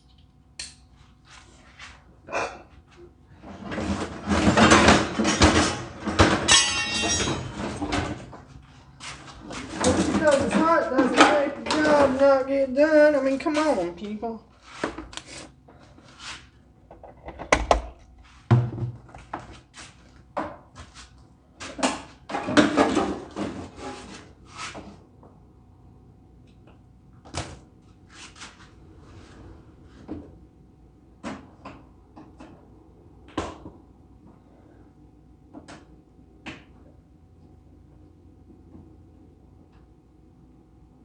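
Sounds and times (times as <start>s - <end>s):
tools clattering on bench: 4.4s - 8.3s.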